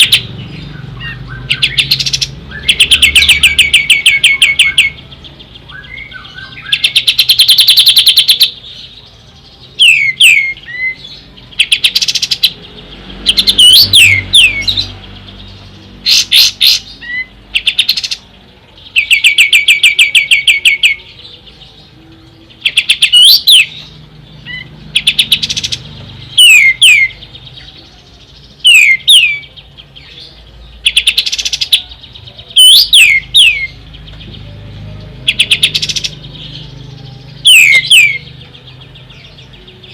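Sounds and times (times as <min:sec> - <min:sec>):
songbird rattling trills: 0:00.0 - 0:05.6, 0:06.2 - 0:08.6, 0:22.6 - 0:27.6, 0:35.2 - 0:39.9.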